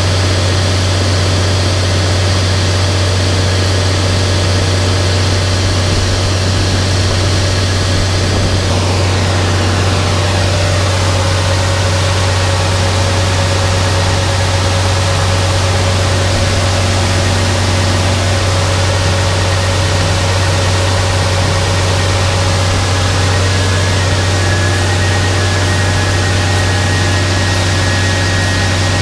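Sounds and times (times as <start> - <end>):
tractor engine running: 0.0 - 29.0.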